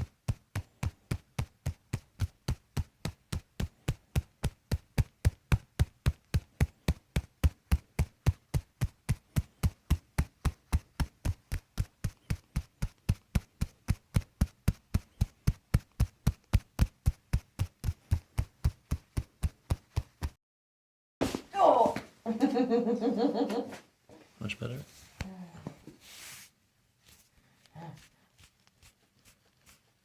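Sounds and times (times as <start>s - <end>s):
percussive massage tapping: 0.0s - 20.4s.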